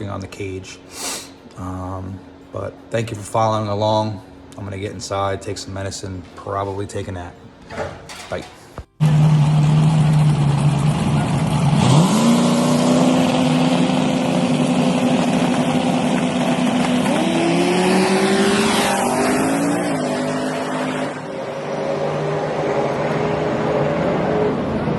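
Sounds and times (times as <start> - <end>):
race car engine at high revs: 9.0 - 24.9.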